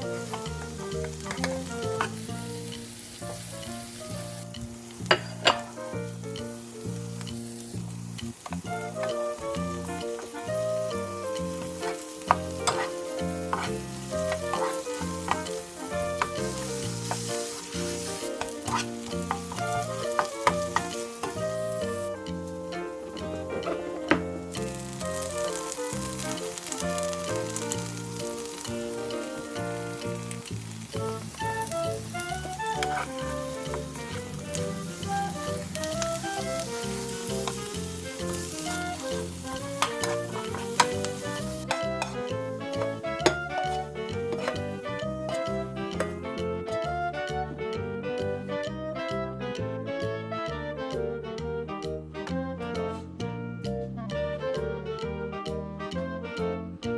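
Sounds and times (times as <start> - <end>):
food sizzling in a pan: 0.0 - 47.0
instrumental music: 0.0 - 56.9.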